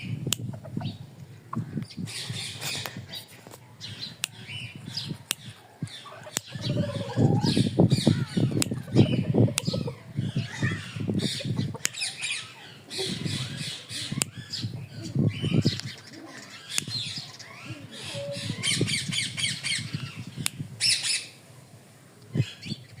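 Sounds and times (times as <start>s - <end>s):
parakeet squawking and chattering: 5.9s - 21.2s.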